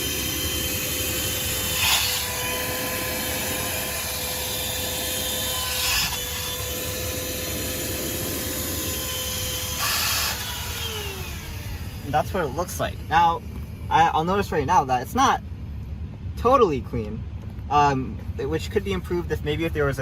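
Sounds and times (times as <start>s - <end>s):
vacuum nozzle scraping: 0.0s - 13.2s
handheld vacuum running: 0.0s - 13.3s.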